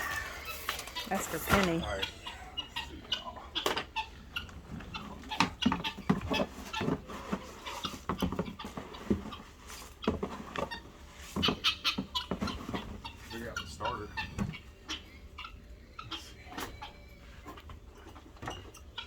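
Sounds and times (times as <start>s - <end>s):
containers rustling and knocking: 0.0s - 2.1s, 3.6s - 13.6s.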